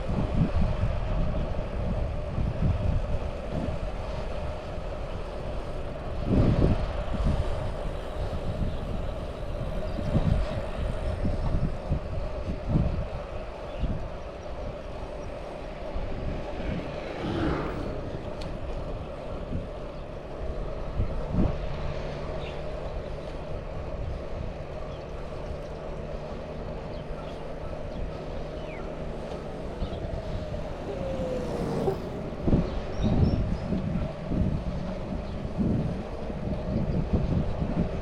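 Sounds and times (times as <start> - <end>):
bike tyre and wind rumble: 0.0 - 38.0
motor vehicle passing: 14.6 - 38.0.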